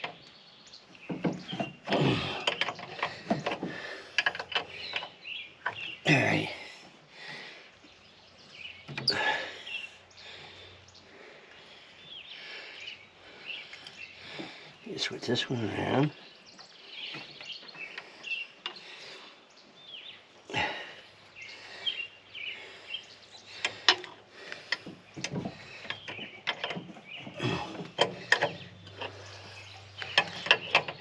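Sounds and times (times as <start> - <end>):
birds chirping: 0.0 - 31.0
hand tools tapping on metal: 1.0 - 5.9, 23.6 - 31.0.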